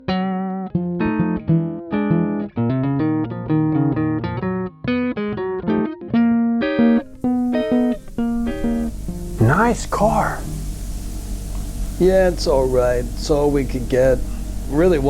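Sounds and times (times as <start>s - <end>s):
plucked guitar tune: 0.0s - 11.8s.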